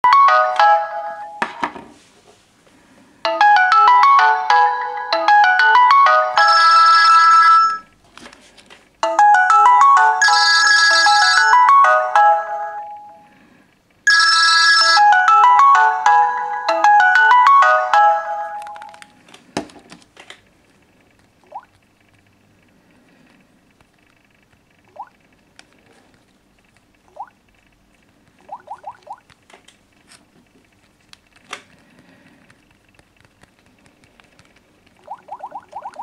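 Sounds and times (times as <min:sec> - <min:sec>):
phone ringtone melody: 0:00.0 - 0:01.4, 0:03.2 - 0:07.9, 0:09.0 - 0:13.4, 0:14.1 - 0:19.0.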